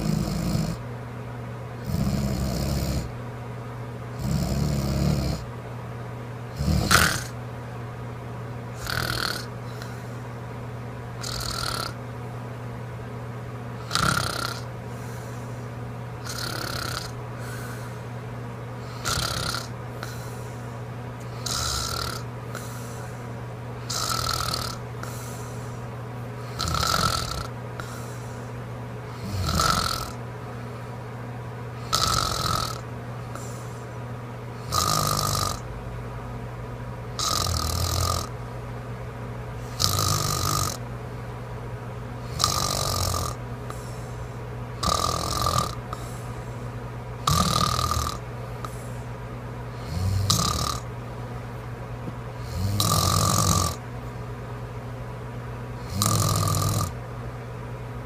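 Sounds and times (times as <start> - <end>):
woman snoring: 0.0 - 0.8, 1.8 - 3.1, 4.2 - 5.5, 6.5 - 7.4, 8.8 - 10.1, 11.2 - 12.0, 13.8 - 15.4, 16.2 - 18.0, 18.8 - 20.6, 21.2 - 23.2, 23.8 - 25.8, 26.4 - 28.4, 29.1 - 30.2, 31.8 - 33.8, 34.6 - 35.7, 37.2 - 38.4, 39.7 - 40.8, 42.2 - 46.4, 47.2 - 48.9, 49.7 - 50.9, 52.4 - 53.8, 55.8 - 57.0.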